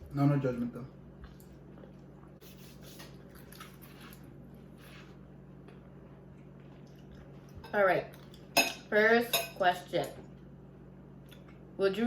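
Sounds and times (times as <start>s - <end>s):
steady low hum: 0.0s - 12.0s
soft food handling noises: 1.2s - 7.6s
faint chewing: 1.2s - 8.5s.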